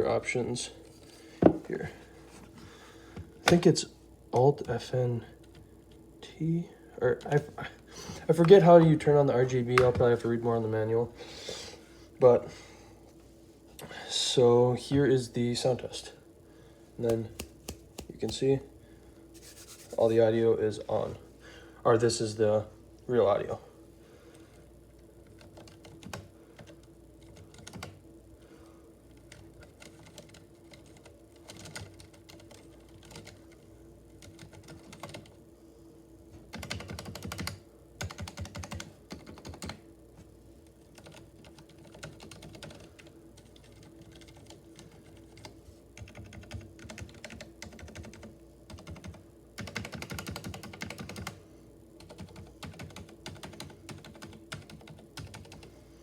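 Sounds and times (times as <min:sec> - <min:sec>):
mechanical keyboard typing: 0:25.4 - 0:28.0, 0:29.3 - 0:33.4, 0:34.2 - 0:35.3, 0:36.5 - 0:39.8, 0:40.9 - 0:51.4, 0:52.0 - 0:55.7.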